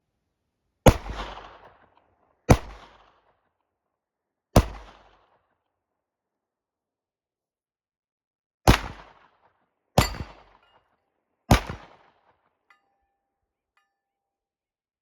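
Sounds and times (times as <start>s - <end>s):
pistol shots with echo: 8.7s - 9.2s, 10.0s - 10.6s, 11.5s - 12.1s.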